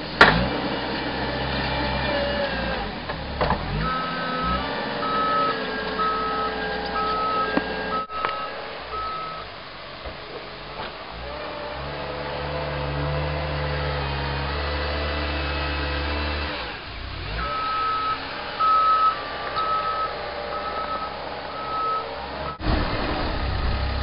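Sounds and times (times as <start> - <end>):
diesel engine running under load: 0.0 - 24.0
reversing alarm beeping: 3.8 - 9.5, 17.4 - 22.6.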